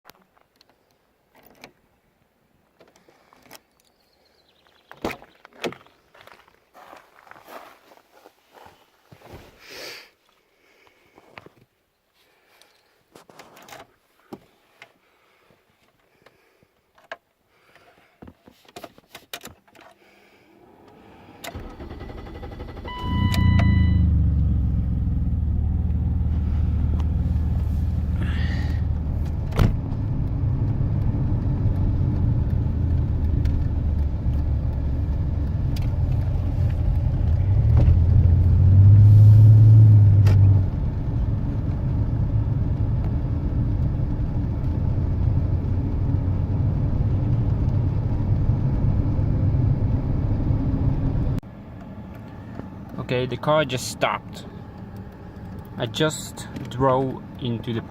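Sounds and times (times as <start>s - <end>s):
car engine starting and running: 20.6s - 57.9s.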